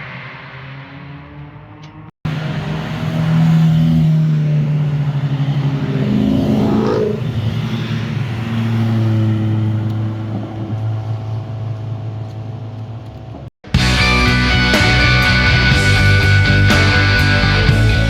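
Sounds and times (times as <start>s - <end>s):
car engine revving past: 0.0s - 13.1s.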